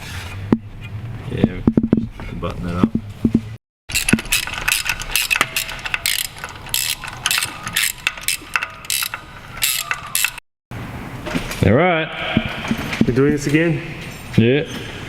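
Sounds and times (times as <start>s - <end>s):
ratchet wrench clicking: 3.9s - 10.4s.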